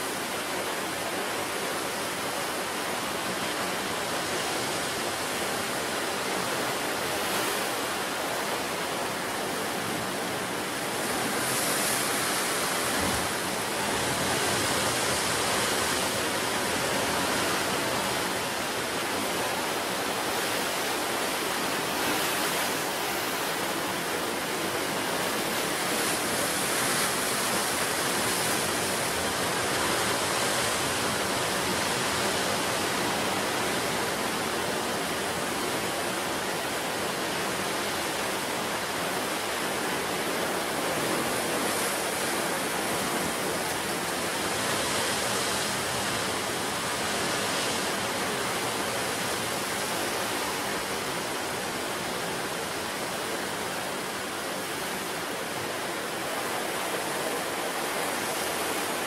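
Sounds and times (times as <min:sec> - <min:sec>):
ocean waves breaking: 0:00.0 - 0:59.0.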